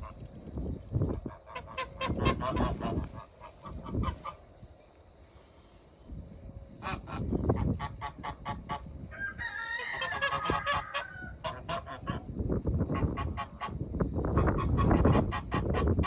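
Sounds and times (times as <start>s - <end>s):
goose honking: 1.3s - 4.4s, 9.8s - 12.3s.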